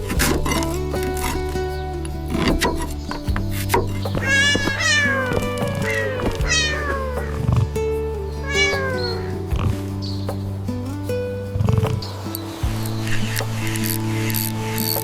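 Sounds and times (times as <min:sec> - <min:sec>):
background music: 0:00.0 - 0:15.0
cat meowing: 0:04.2 - 0:07.3.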